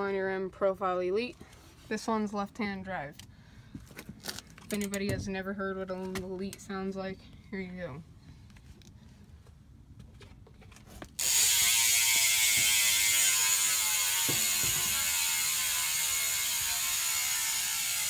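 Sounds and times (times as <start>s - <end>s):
bicycle hub freewheeling buzz: 11.2s - 18.0s.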